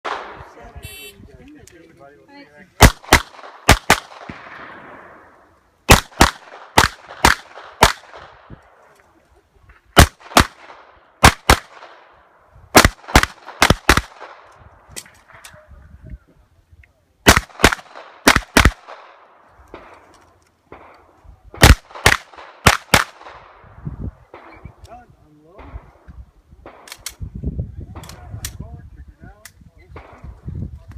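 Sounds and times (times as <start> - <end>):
pistol shots: 2.8 - 8.5, 10.0 - 12.1, 12.7 - 14.5, 17.2 - 20.0, 21.6 - 23.6.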